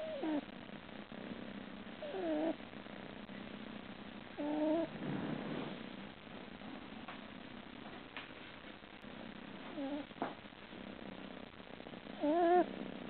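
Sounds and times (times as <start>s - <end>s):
cat snoring: 0.0s - 0.5s, 1.1s - 2.6s, 4.3s - 6.0s, 9.7s - 10.1s, 12.0s - 13.0s.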